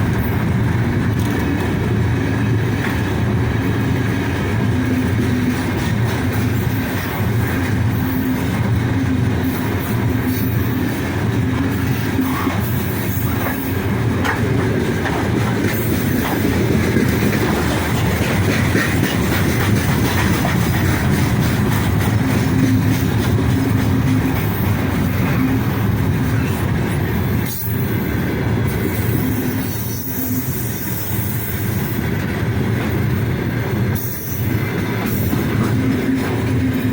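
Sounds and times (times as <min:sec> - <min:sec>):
train clatter: 0:00.0 - 0:36.9
train wheels rumbling on rails: 0:00.0 - 0:36.9.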